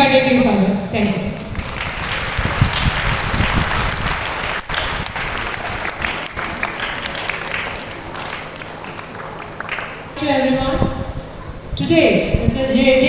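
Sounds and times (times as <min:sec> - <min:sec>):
audience applauding: 0:01.4 - 0:10.2.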